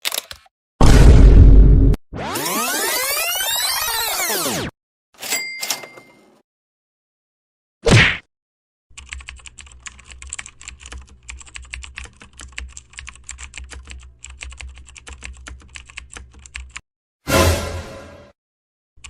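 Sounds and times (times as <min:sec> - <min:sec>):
computer keyboard typing: 0:08.9 - 0:16.8.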